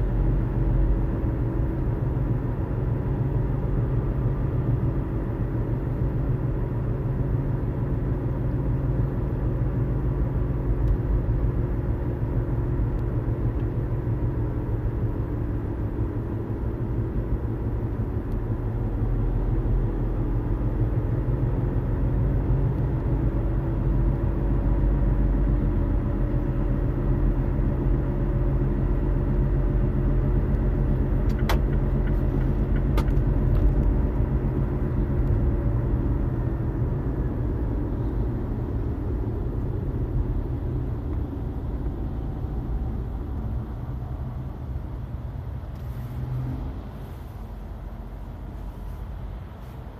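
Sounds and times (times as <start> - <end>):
car cabin rumble while driving: 0.0 - 49.9.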